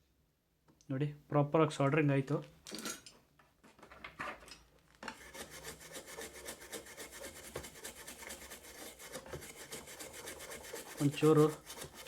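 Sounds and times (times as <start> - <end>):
brush scrubbing circuit board: 5.2 - 12.0.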